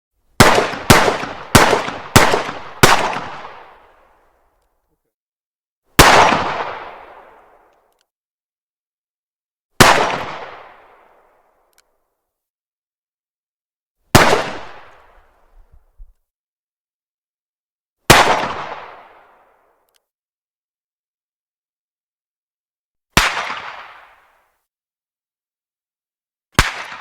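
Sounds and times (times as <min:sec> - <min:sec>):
pistol shots echoing: 0:00.4 - 0:04.0, 0:06.0 - 0:07.5, 0:09.8 - 0:11.0, 0:14.1 - 0:15.1, 0:18.1 - 0:19.2, 0:23.2 - 0:24.2, 0:26.6 - 0:27.0.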